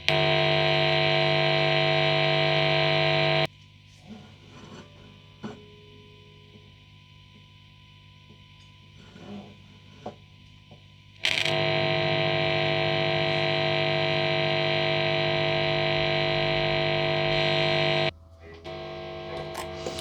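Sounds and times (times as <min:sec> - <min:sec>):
amplifier hum: 0:00.0 - 0:03.5, 0:06.2 - 0:09.0, 0:10.2 - 0:20.0
distorted electric guitar chord: 0:00.0 - 0:03.5, 0:11.2 - 0:18.1, 0:18.7 - 0:20.0
small clicks: 0:11.2 - 0:11.9.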